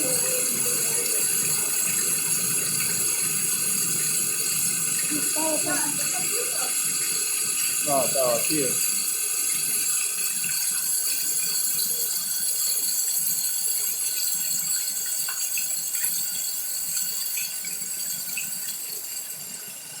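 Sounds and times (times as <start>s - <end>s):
steady rain falling: 0.0s - 8.8s.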